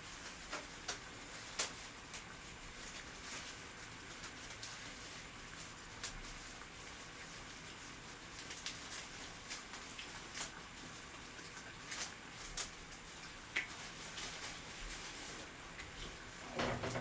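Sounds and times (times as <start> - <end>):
faint clicks and taps: 11.6 - 13.9.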